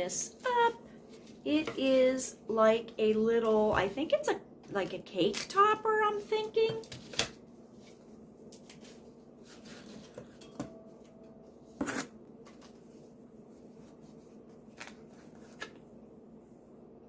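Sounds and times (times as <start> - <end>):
paper packaging crinkling: 13.6 - 15.8.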